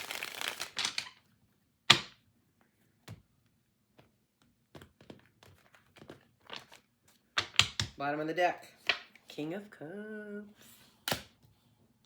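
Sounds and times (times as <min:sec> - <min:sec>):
cards shuffling: 0:00.0 - 0:01.2.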